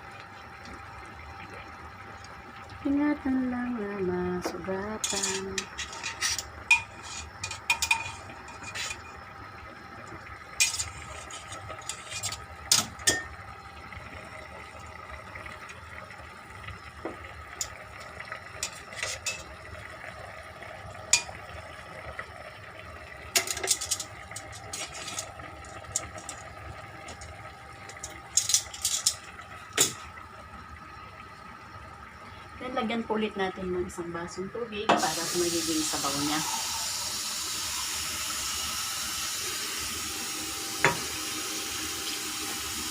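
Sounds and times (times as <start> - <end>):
faint background hum: 0.0 - 42.9
utensils clinking against dishes: 5.0 - 9.0, 18.6 - 19.5, 23.4 - 25.3, 28.0 - 29.2.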